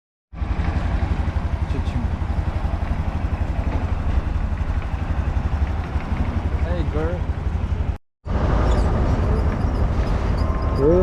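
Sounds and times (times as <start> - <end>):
motorcycle engine throbbing: 0.4 - 8.0.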